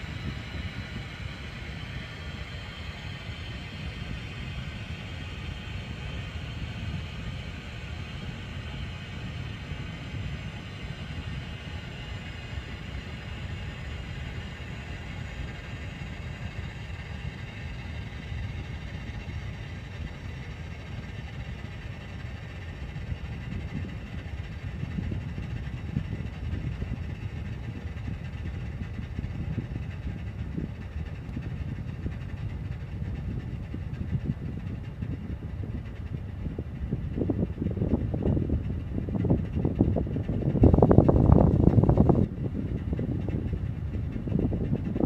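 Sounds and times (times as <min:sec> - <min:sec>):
air conditioner running: 0:00.0 - 0:45.0.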